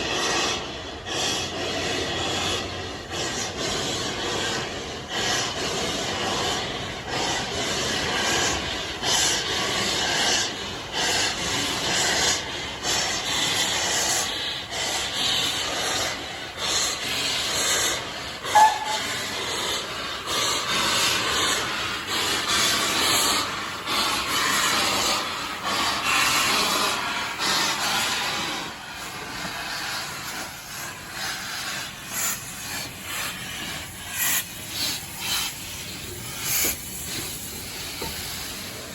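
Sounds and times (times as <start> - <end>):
train rushing and hissing: 0.0 - 38.9
brief sharp squeal: 18.5 - 19.1.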